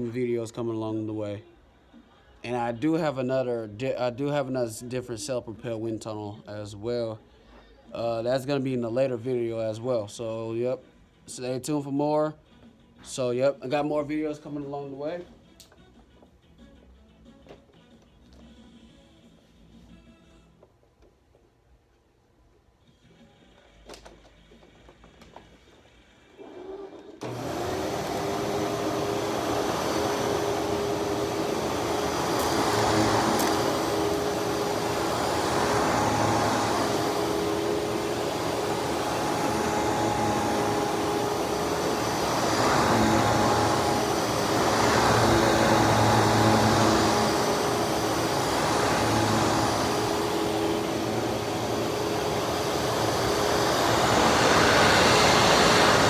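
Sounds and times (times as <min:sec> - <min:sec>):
upright vacuum cleaner running: 0:26.4 - 0:56.0.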